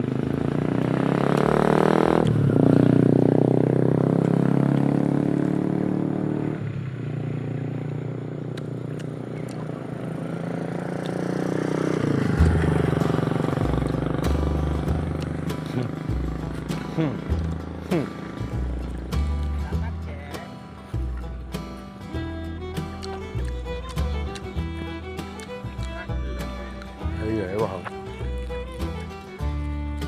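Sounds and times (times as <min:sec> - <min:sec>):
small motor engine running: 0:07.4 - 0:19.2, 0:22.1 - 0:30.0.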